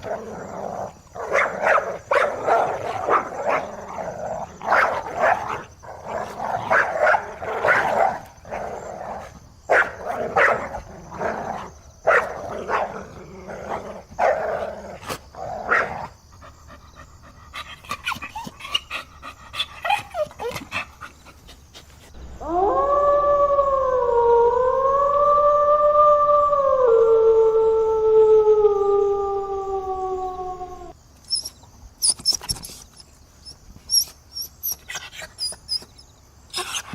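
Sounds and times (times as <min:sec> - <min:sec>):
dogs barking: 0:01.1 - 0:14.7, 0:15.6 - 0:16.2
dog howling: 0:22.4 - 0:31.0
dog whining: 0:33.9 - 0:36.9.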